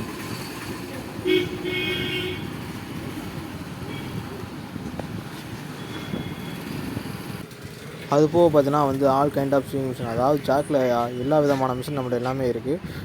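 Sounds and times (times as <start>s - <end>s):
street traffic noise: 0.0s - 13.0s
vehicle horn: 1.2s - 2.5s, 5.8s - 6.7s.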